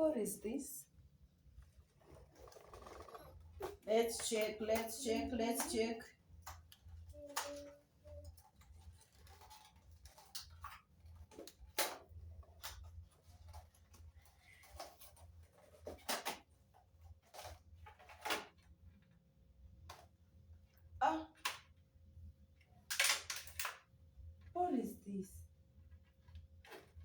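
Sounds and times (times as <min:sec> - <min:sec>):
packaging clicks taps and rustles: 0:02.0 - 0:19.2, 0:22.9 - 0:23.9.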